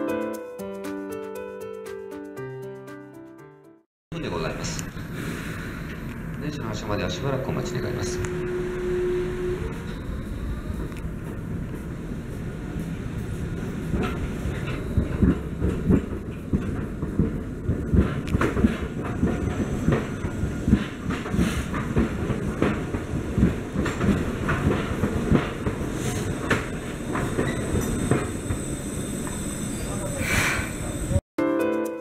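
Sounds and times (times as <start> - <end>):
train rumbling on rails: 4.2 - 31.2
wheels clattering over rail joints: 12.7 - 29.5.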